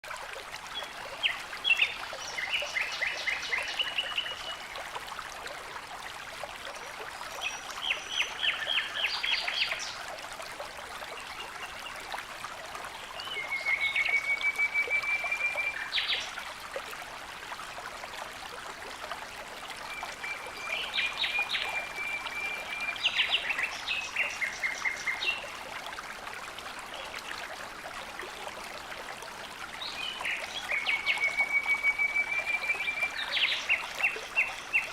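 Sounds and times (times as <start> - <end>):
running water rushing: 0.0 - 34.9.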